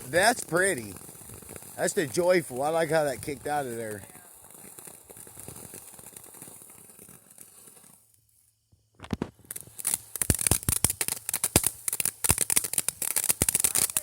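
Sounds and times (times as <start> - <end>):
firework fountain crackling: 0.0 - 14.0.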